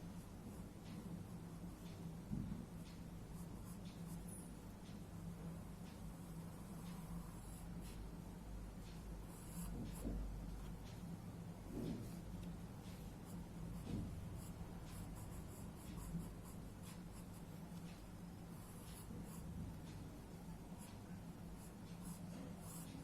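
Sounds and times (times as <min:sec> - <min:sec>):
steady low hum: 0:00.0 - 0:23.0
pencil scratching on paper: 0:03.4 - 0:04.5, 0:09.2 - 0:10.7, 0:12.8 - 0:17.9, 0:18.5 - 0:19.5, 0:20.8 - 0:23.0.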